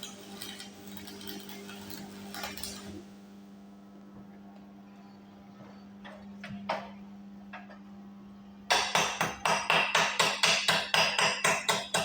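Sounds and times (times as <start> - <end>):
hammer chipping metal: 8.7 - 12.0.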